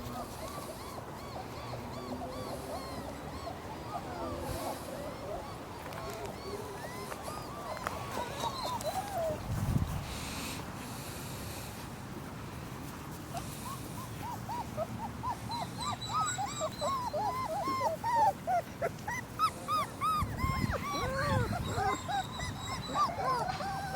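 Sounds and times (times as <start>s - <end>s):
puppies whimpering and squealing: 0.0s - 10.0s, 13.3s - 23.9s.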